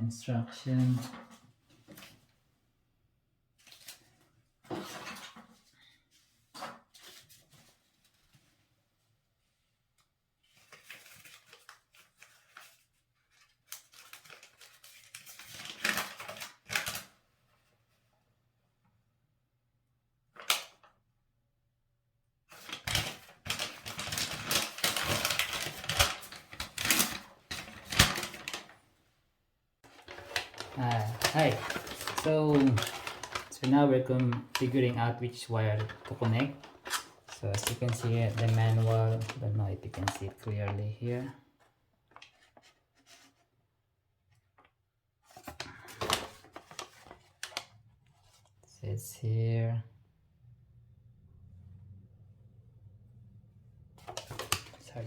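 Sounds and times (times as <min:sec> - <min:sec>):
paper sheet crinkling and rustling: 0:03.6 - 0:08.7, 0:09.4 - 0:18.1, 0:22.5 - 0:28.8, 0:29.8 - 0:43.6, 0:44.3 - 0:48.6, 0:54.0 - 0:55.0.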